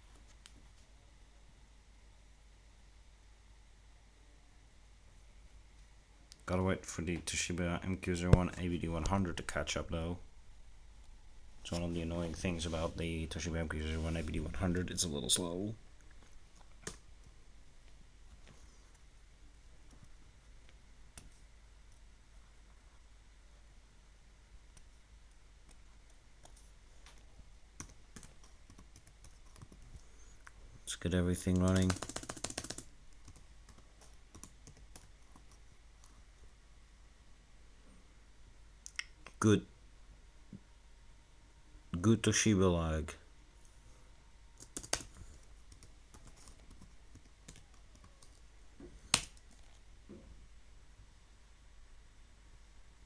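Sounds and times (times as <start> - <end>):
laptop clicking: 31.5 - 35.6, 44.6 - 48.4, 49.0 - 49.8.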